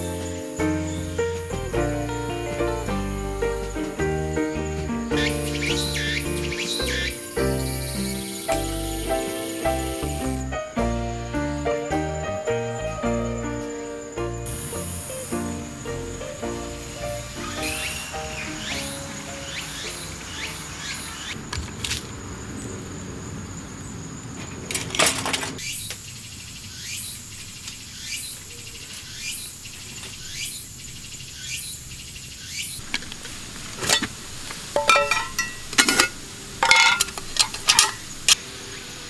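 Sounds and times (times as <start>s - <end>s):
high falling chirp: 0.0s - 21.4s.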